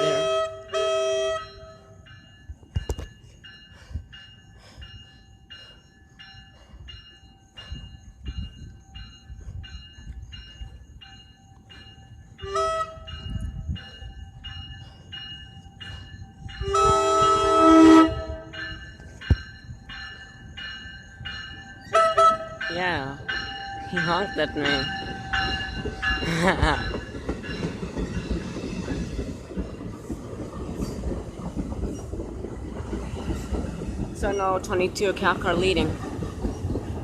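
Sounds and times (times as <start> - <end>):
train horn blasts: 0.0 - 2.0, 12.4 - 13.1, 16.6 - 18.6, 21.9 - 22.6
train rumble: 0.0 - 37.0.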